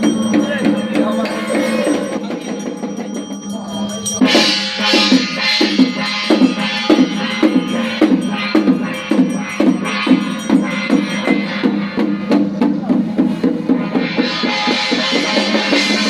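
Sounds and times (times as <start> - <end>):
metallic shimmer: 0.0 - 12.4
drum beat: 0.0 - 16.0.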